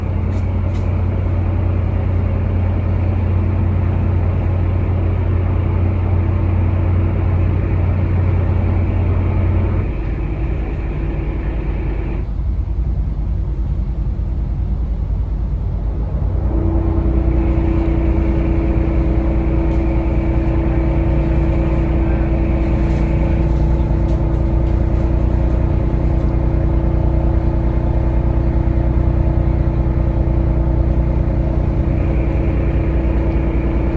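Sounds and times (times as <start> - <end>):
boat engines humming drone: 0.0 - 33.9
higher steady engine tone: 0.0 - 33.9.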